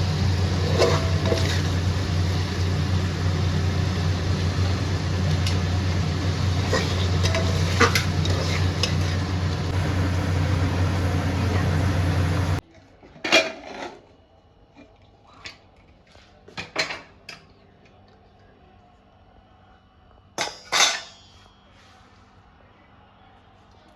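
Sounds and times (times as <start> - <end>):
metal utensil scraping a pot: 0.0 - 2.5, 5.4 - 10.0
loud steady hum: 0.0 - 12.6.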